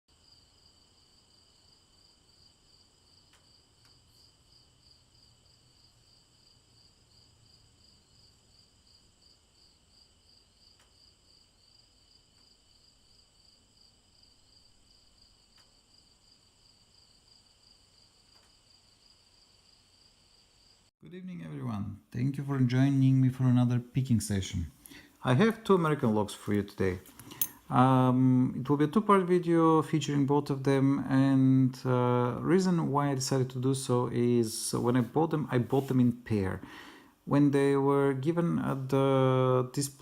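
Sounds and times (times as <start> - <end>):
cricket trill: 0.1 - 20.9
faint ticks: 3.2 - 4.1, 10.7 - 11.0, 15.5 - 15.8, 18.3 - 18.6.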